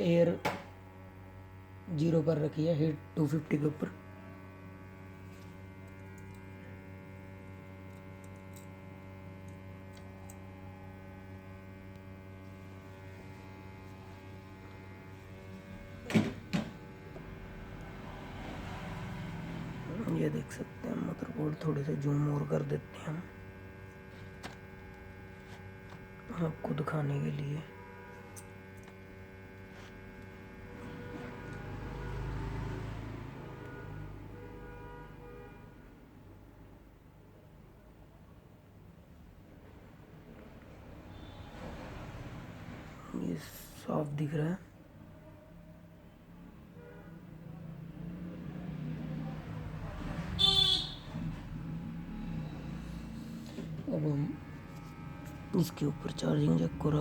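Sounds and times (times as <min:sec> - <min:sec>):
hot air station humming: 0:00.0 - 0:34.8, 0:50.4 - 0:57.0.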